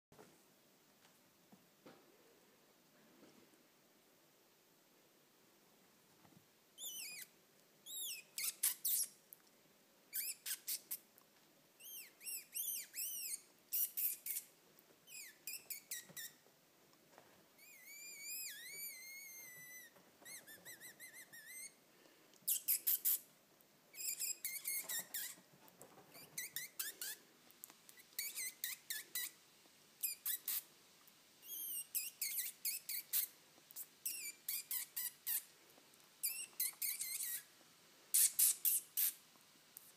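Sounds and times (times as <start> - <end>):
high-pitched whistles and chirps: 6.8 - 9.1, 10.2 - 10.8, 11.8 - 14.4, 17.6 - 21.8, 24.0 - 25.4, 31.5 - 33.3, 36.2 - 37.4.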